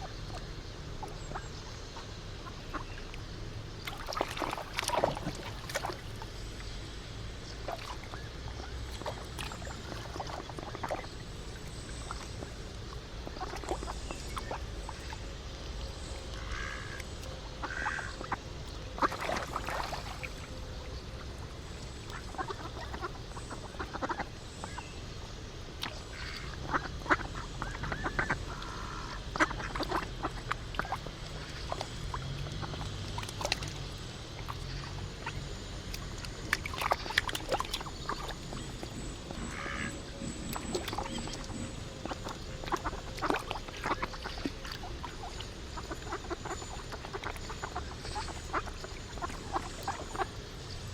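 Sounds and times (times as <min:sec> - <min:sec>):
steady low rumble: 0:00.0 - 0:50.9
ducks quacking: 0:02.4 - 0:02.9, 0:16.4 - 0:18.4, 0:22.1 - 0:24.8, 0:26.1 - 0:33.6, 0:36.6 - 0:50.4
geese honking: 0:39.3 - 0:40.0.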